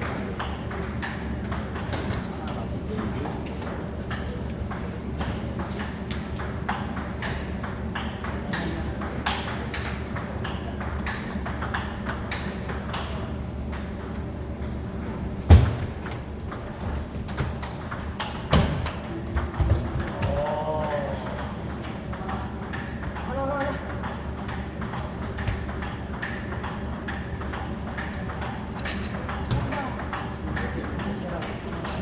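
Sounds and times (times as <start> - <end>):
table tennis balls clicking: 0.0 - 15.0, 15.9 - 32.0.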